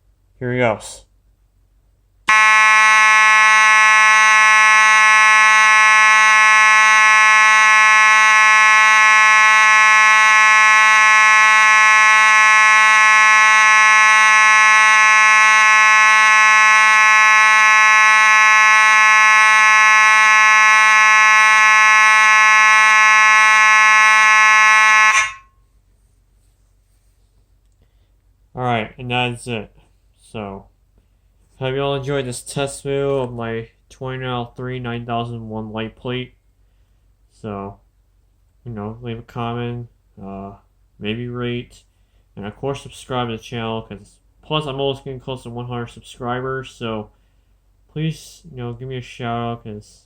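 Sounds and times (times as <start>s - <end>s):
fire alarm horn steady buzz: 2.3s - 25.6s.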